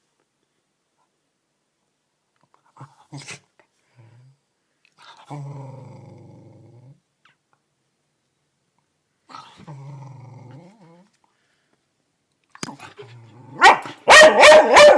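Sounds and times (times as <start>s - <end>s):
dog growling low: 5.2s - 7.1s, 9.3s - 11.2s, 12.7s - 13.6s
dog snapping: 12.6s - 12.9s
dog barking loudly: 13.6s - 14.9s.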